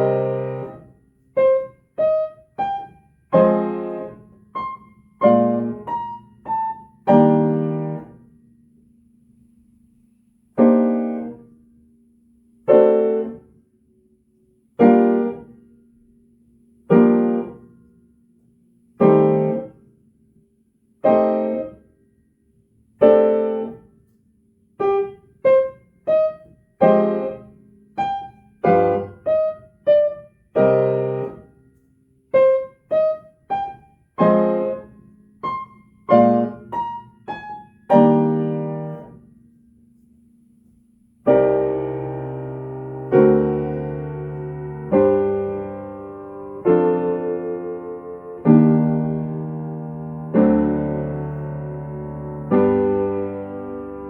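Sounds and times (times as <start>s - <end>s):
piano playing slow chords: 0.0s - 8.4s, 16.9s - 17.9s, 19.0s - 19.8s, 21.0s - 21.8s, 24.8s - 31.5s, 32.3s - 40.0s, 41.2s - 54.0s.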